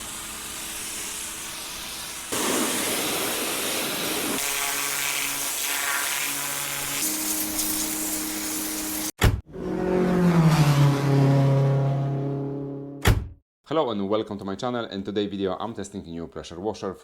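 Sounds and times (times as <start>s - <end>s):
pressure washer spraying hiss: 0.0s - 9.1s.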